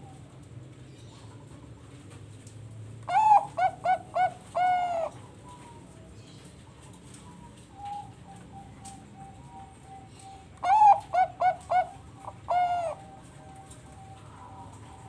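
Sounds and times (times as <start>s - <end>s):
dove cooing: 3.0s - 15.0s.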